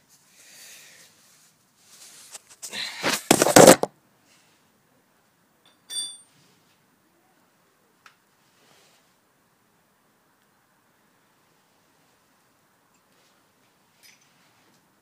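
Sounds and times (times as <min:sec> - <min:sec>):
ringing metal chink: 0:05.6 - 0:06.3
metal tools clattering: 0:05.7 - 0:06.3.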